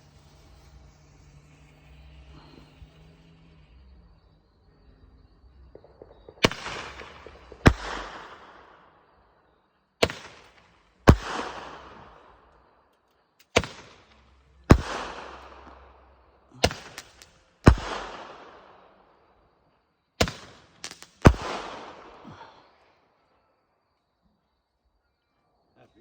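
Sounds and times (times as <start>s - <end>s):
firework launch reports: 5.2s - 12.8s, 13.4s - 19.4s
firework bangs: 5.2s - 19.4s, 20.2s - 22.8s.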